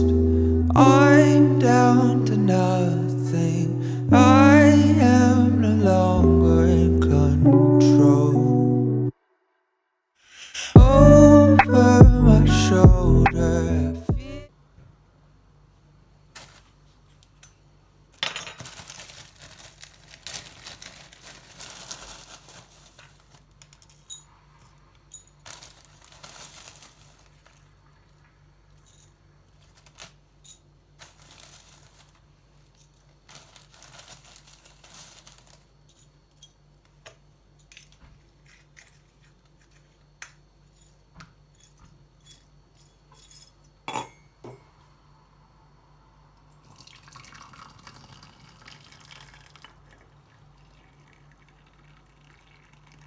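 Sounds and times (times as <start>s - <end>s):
faint steady hum: 0.0s - 9.2s, 10.6s - 53.0s
rustling and crinkling: 16.2s - 17.5s, 18.4s - 43.2s
clicks and clinks of small objects: 22.5s - 44.6s.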